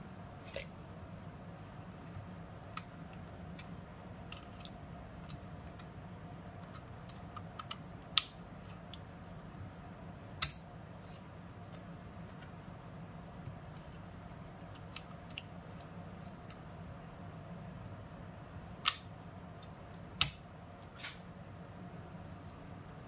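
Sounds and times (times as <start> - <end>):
small clicks and taps of handling parts: 13.4 - 16.6.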